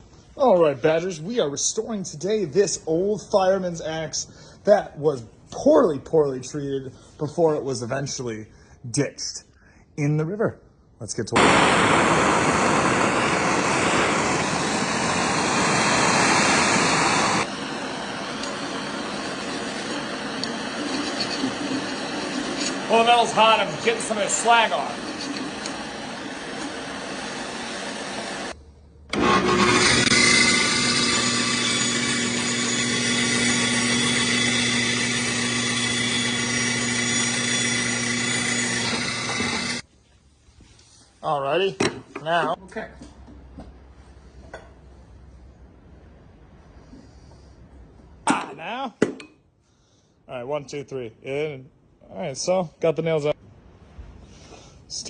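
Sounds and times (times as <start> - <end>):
gas torch hissing: 11.4 - 39.9
power tool grinding steel: 12.5 - 39.8.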